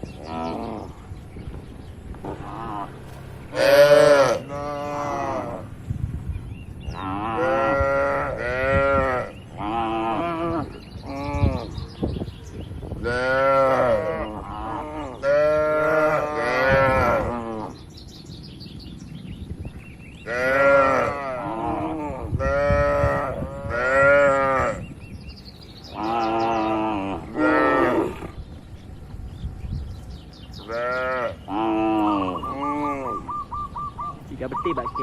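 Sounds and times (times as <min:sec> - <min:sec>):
cattle mooing: 0:02.2 - 0:05.8, 0:06.9 - 0:11.8, 0:13.0 - 0:17.8, 0:20.3 - 0:24.9, 0:26.0 - 0:28.4, 0:30.6 - 0:33.3.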